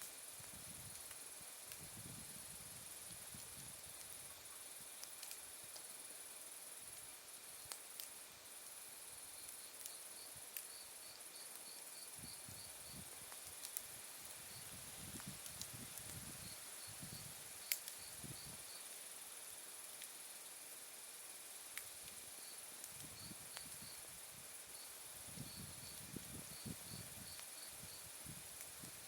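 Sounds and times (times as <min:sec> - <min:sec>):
insect quick chirps: 0:00.1 - 0:29.0
wood fire crackling and popping: 0:00.4 - 0:02.0, 0:05.0 - 0:05.9, 0:11.5 - 0:18.6, 0:22.8 - 0:24.1.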